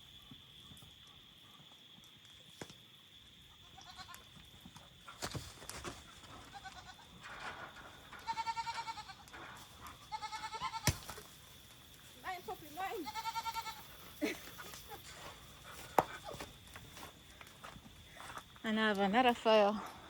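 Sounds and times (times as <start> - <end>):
cricket trill: 0.0 - 20.0
goats bleating: 8.2 - 9.2, 10.1 - 10.9, 13.0 - 13.9.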